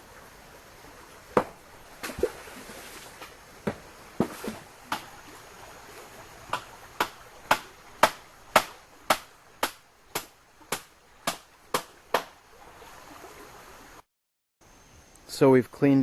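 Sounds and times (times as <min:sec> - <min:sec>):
hammering knocks: 0:03.6 - 0:05.1.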